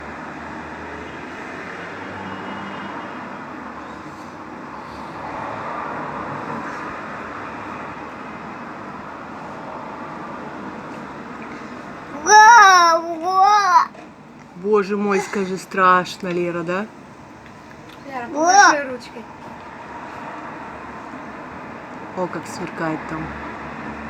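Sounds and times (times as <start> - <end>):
rushing city noise: 0.0 - 24.0
high-pitched voice crying out: 12.2 - 13.9, 18.4 - 18.8.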